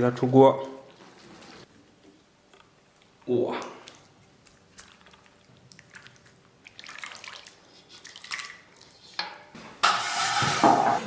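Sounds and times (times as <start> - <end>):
liquid dripping and splashing: 3.6 - 9.1.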